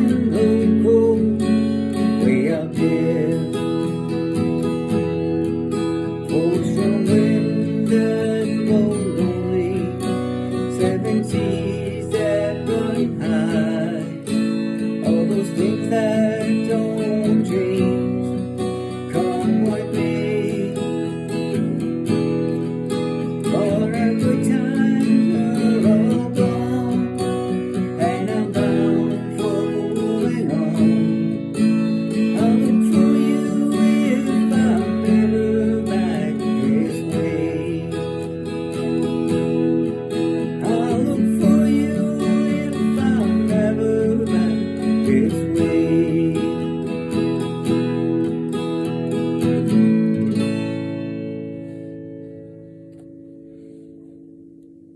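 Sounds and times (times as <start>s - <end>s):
acoustic guitar strumming chords: 0.0s - 54.9s.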